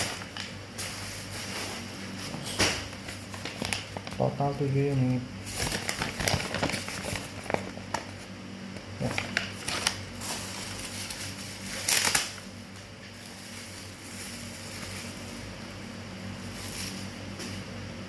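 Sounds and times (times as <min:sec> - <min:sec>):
low electrical hum: 0:00.0 - 0:18.0
packaging rustling: 0:02.9 - 0:08.2, 0:09.0 - 0:12.5.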